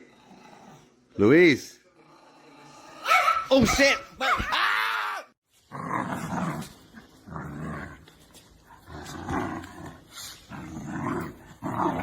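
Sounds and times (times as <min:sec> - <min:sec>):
dog growling: 0:00.0 - 0:01.0, 0:01.9 - 0:03.2, 0:05.7 - 0:12.0.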